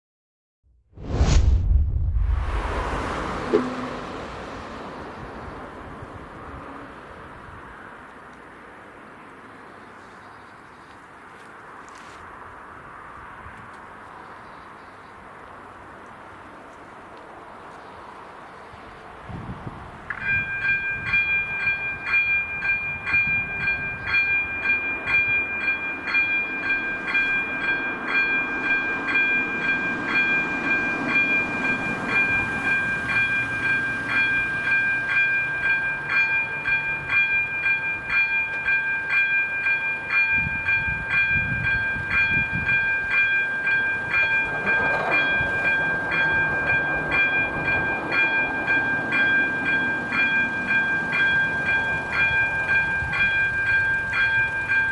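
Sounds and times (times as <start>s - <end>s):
train rumbling: 1.0s - 9.1s, 15.4s - 54.9s
crossing warning bell ringing: 20.1s - 54.9s.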